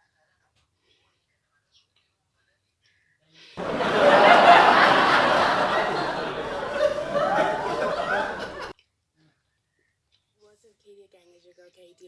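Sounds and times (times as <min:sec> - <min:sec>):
loud laughter: 0:03.6 - 0:08.7.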